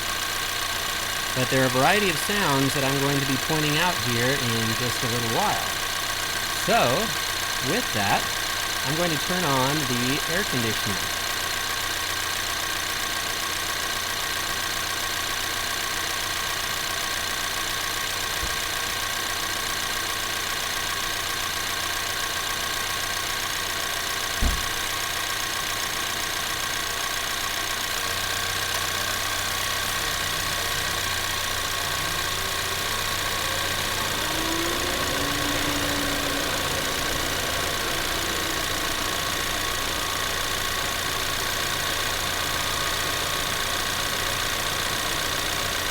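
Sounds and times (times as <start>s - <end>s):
car engine idling: 0.0s - 45.9s.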